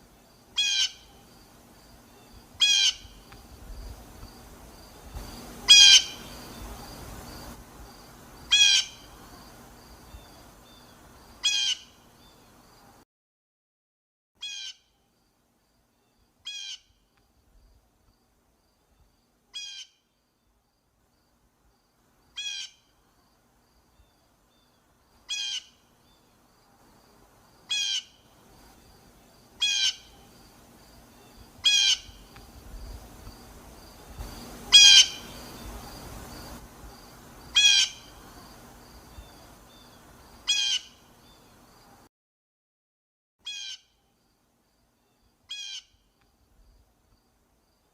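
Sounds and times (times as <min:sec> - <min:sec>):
faint hiss and low rumble: 0:00.0 - 0:13.0, 0:14.8 - 0:42.1, 0:43.9 - 0:47.9
blue jay calling: 0:00.5 - 0:01.3, 0:02.2 - 0:03.3, 0:05.6 - 0:06.7, 0:08.5 - 0:09.2, 0:11.4 - 0:12.0, 0:14.4 - 0:15.0, 0:16.4 - 0:17.0, 0:19.5 - 0:20.1, 0:22.4 - 0:22.9, 0:25.3 - 0:26.2, 0:27.7 - 0:28.3, 0:29.6 - 0:30.4, 0:31.6 - 0:32.4, 0:34.6 - 0:35.8, 0:37.5 - 0:38.2, 0:39.8 - 0:41.1, 0:43.4 - 0:44.0, 0:45.5 - 0:46.1.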